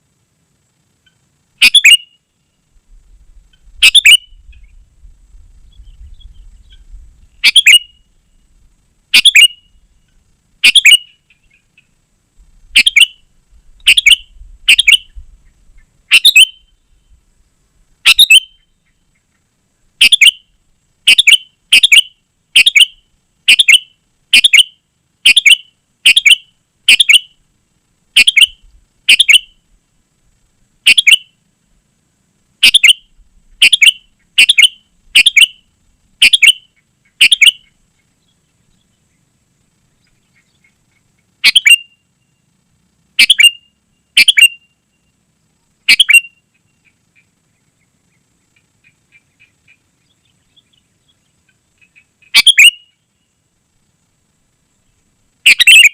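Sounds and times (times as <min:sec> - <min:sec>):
bulbul calling: 0:01.0 - 0:02.3, 0:03.5 - 0:04.9, 0:05.6 - 0:08.4, 0:09.1 - 0:12.0, 0:12.7 - 0:17.2, 0:18.0 - 0:27.4, 0:28.1 - 0:29.6, 0:30.8 - 0:31.4, 0:32.6 - 0:39.3, 0:40.0 - 0:42.5, 0:43.2 - 0:45.2, 0:45.8 - 0:53.3, 0:55.4 - 0:55.9.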